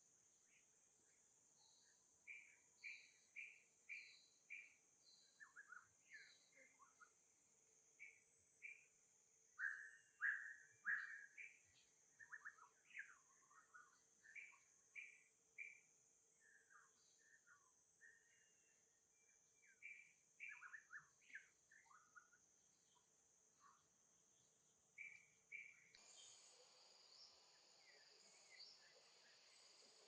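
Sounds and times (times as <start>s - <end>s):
high insect drone: 26.0s - 30.0s.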